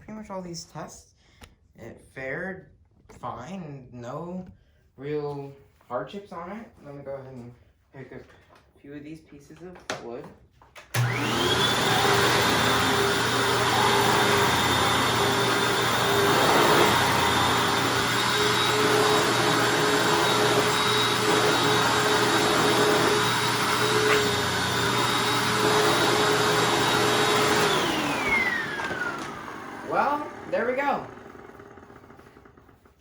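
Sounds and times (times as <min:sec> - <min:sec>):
upright vacuum cleaner running: 0:10.9 - 0:33.0.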